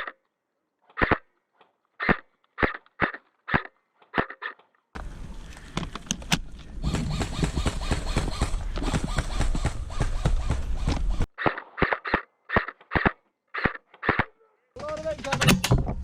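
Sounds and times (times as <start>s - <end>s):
airsoft rifle shots: 1.0s - 1.2s, 6.8s - 14.3s
scattered clicks: 5.5s - 15.7s.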